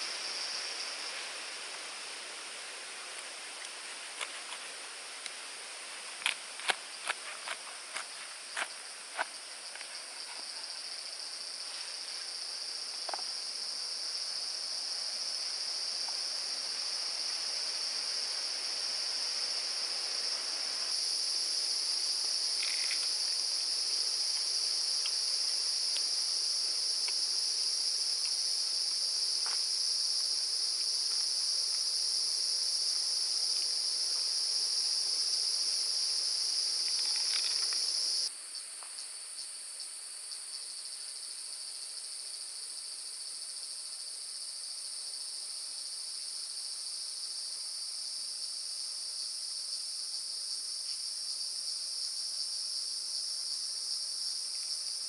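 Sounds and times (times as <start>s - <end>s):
pulsing insect chirr: 0.0s - 39.5s
insect chorus drone: 0.0s - 55.0s.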